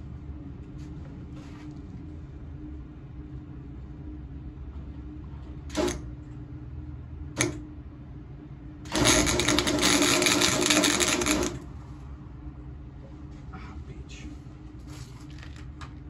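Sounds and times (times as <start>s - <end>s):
electric welder crackling: 5.7s - 6.1s, 8.9s - 11.7s.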